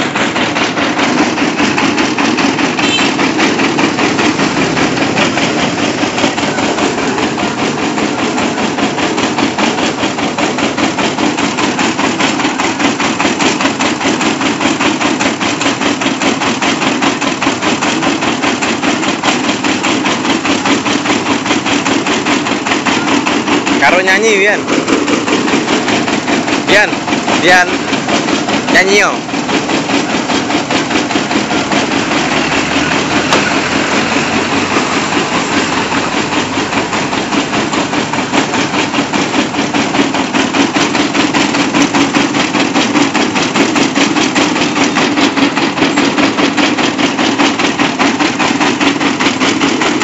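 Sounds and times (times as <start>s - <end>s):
engine running with rapid clatter: 0.0s - 50.0s.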